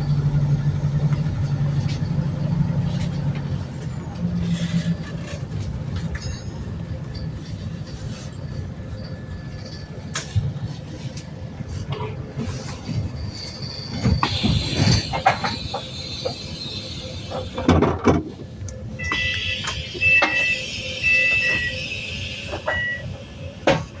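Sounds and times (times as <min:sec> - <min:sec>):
bus clunks: 0:00.0 - 0:24.0
bus running noise: 0:00.0 - 0:24.0
high steady whistle: 0:13.2 - 0:17.8, 0:19.0 - 0:23.2
two-pitch door warning beeps: 0:19.0 - 0:23.2.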